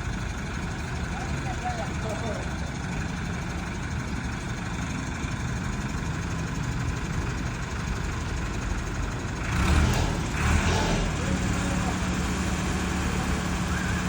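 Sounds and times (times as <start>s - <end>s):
engine idling: 0.0s - 14.0s
loud rough noise: 9.2s - 14.0s.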